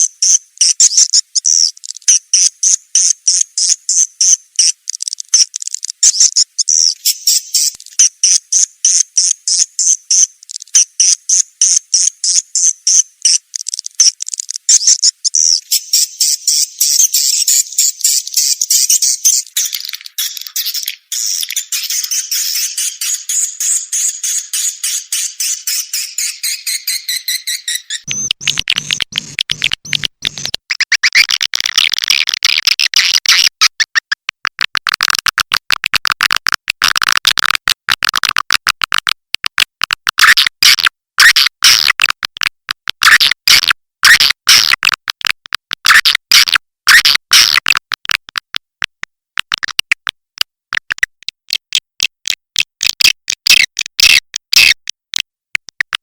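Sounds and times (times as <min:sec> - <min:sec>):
swiftlets chirping and twittering: 0:00.6 - 0:30.5.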